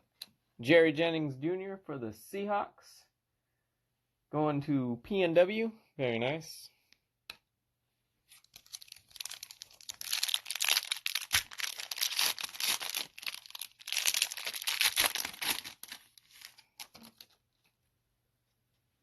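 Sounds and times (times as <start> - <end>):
wrapper tearing and crinkling: 8.3 - 17.4.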